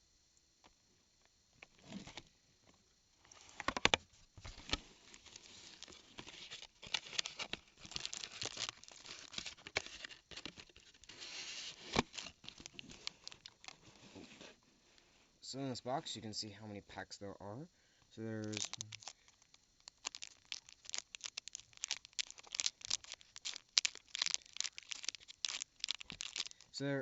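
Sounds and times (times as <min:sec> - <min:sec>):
cardboard rustling: 0:03.5 - 0:14.6, 0:18.4 - 0:26.6
packaging crinkling and tearing: 0:03.6 - 0:14.4, 0:18.4 - 0:26.6.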